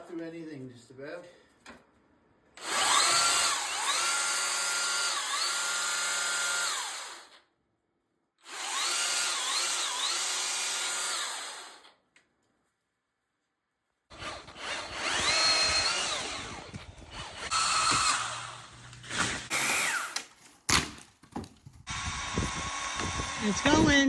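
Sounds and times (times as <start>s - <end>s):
electric pole saw whining: 2.6s - 7.4s, 8.4s - 12.0s, 14.1s - 20.4s, 21.9s - 24.0s.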